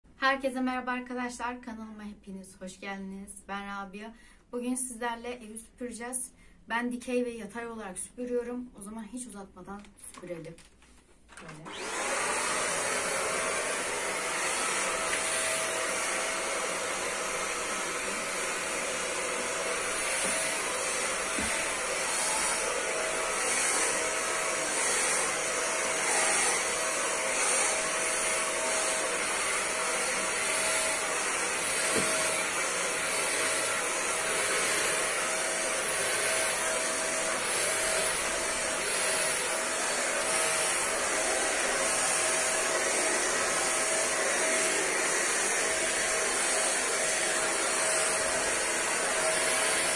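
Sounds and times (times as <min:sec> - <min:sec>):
vacuum cleaner running: 0:11.4 - 0:49.9.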